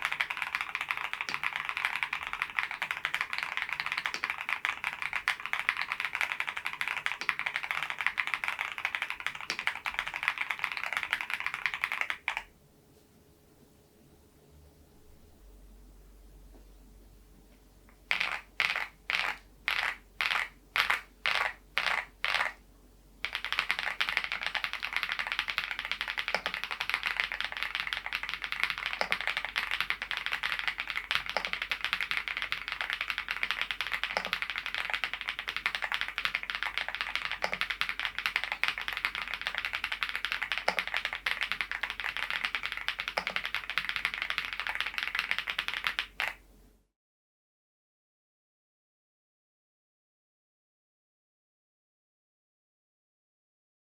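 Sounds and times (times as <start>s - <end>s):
mechanical keyboard typing: 0.0s - 12.5s, 18.1s - 22.6s, 23.2s - 46.4s.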